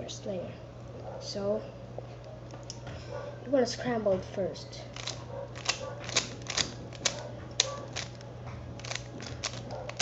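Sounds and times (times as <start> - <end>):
puzzle cube plastic clicks: 5.0 - 8.2, 8.8 - 10.0.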